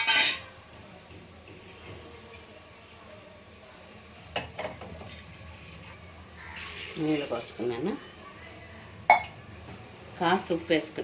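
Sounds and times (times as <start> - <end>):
utensil clinking clay pot: 9.0 - 9.7.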